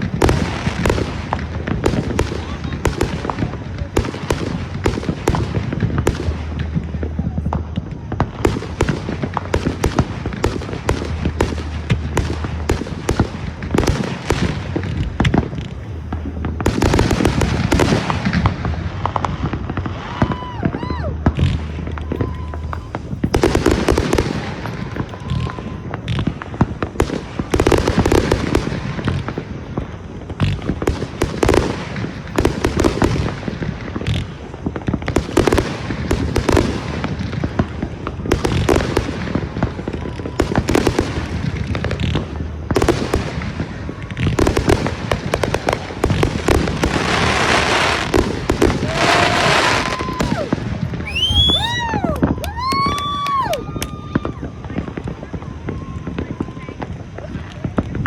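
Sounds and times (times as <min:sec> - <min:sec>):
fireworks bangs and crackling: 0:00.0 - 0:58.0
firework whistle: 0:03.9 - 0:29.4, 0:42.8 - 0:57.4.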